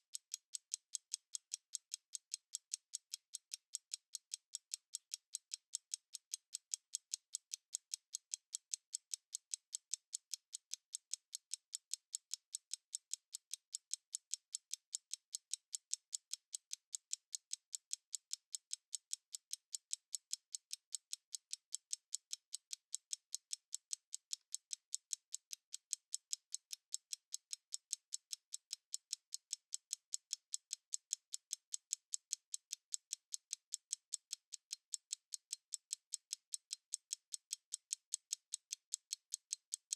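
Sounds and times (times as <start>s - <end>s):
stopwatch ticking: 0.0s - 39.9s.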